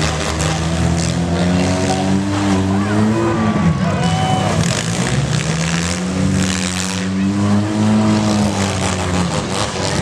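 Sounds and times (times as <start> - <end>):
car engines revving: 0.0 - 10.0.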